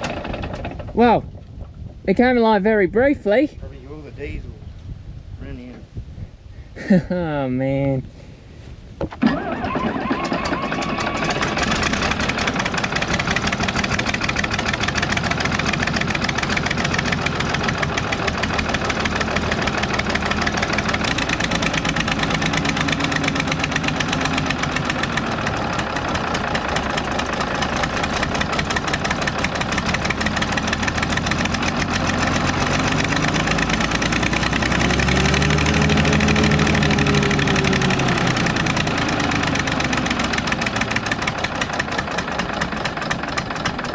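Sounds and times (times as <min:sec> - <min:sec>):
diesel engine running roughly: 0:09.3 - 0:43.9.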